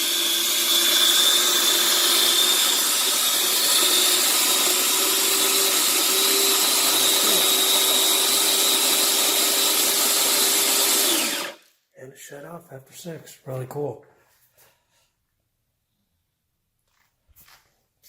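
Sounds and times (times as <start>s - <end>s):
electric coffee grinder running: 0.0s - 11.6s.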